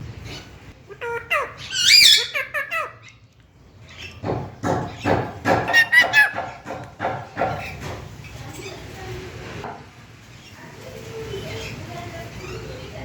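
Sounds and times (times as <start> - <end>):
parrot squawking: 0.2 - 3.2, 4.8 - 7.8
parrot voice-like chatter: 0.8 - 3.1, 5.5 - 6.8.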